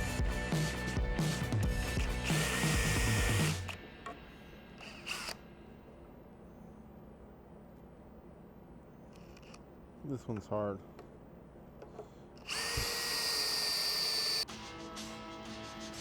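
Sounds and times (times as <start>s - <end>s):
background music with steady beat: 0.0s - 5.0s, 14.2s - 16.0s
power drill running: 1.8s - 3.8s, 4.8s - 5.5s, 12.4s - 14.5s.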